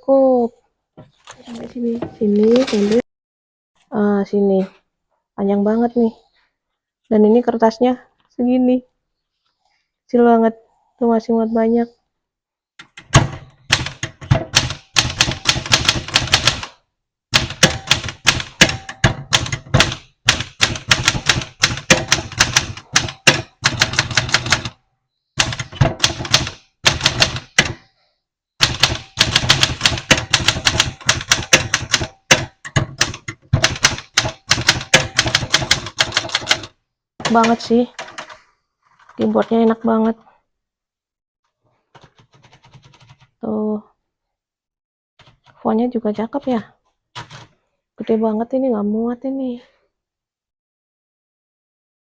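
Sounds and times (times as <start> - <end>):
typewriter key strikes: 12.8 - 16.7, 17.4 - 24.7, 25.4 - 27.8, 28.6 - 38.3.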